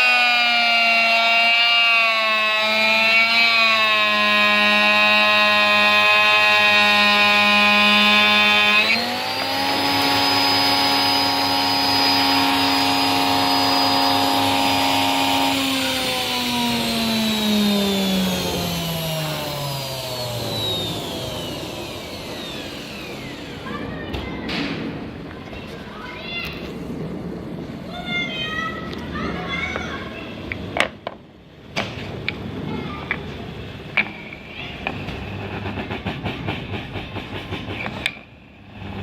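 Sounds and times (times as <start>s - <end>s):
washing machine motor whine: 0.0s - 24.5s, 34.3s - 39.0s.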